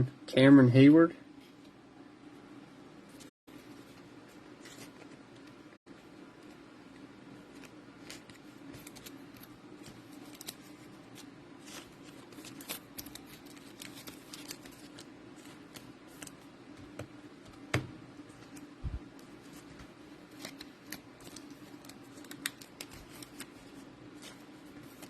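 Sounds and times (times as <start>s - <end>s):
steady low hum: 0.0s - 25.0s
cards and wrapping rustling: 3.2s - 5.6s, 7.3s - 17.1s, 18.2s - 25.0s.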